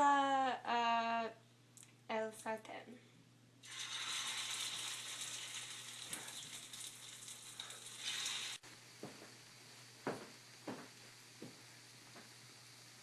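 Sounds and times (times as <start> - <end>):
food sizzling in frying pan: 3.6 - 13.0.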